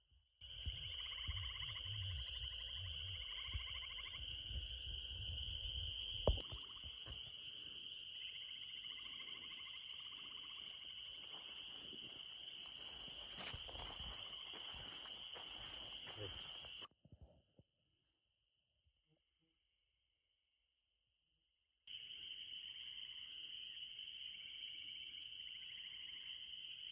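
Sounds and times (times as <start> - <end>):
high-pitched insect drone: 0.4 - 16.9, 21.9 - 26.9
pulsed insect trilling: 0.4 - 16.9.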